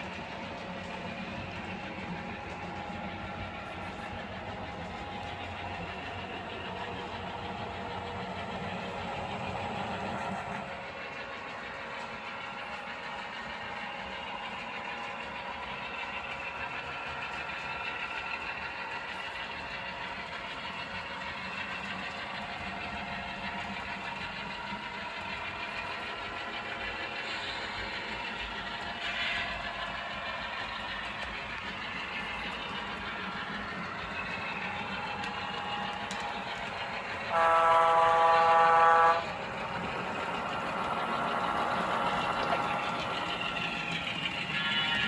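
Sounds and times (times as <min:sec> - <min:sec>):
model trains running on track: 0:00.0 - 0:45.0
model locomotive horn blast: 0:37.3 - 0:39.3.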